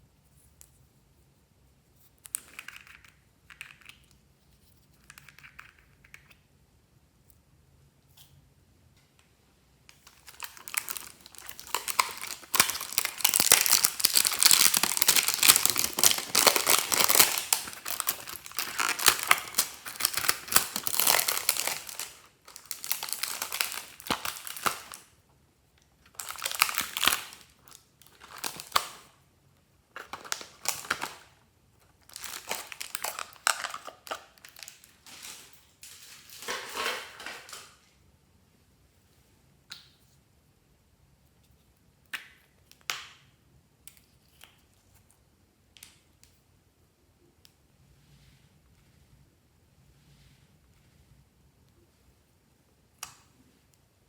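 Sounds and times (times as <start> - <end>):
crinkling and crackling: 9.9 - 25.1, 25.8 - 29.2, 29.9 - 38.0.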